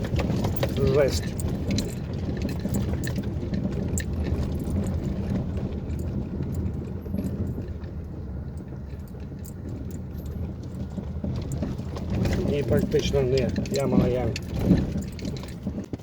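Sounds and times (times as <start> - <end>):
car driving over potholed road: 0.0 - 16.0
clicks and knocks in car cabin: 0.0 - 16.0.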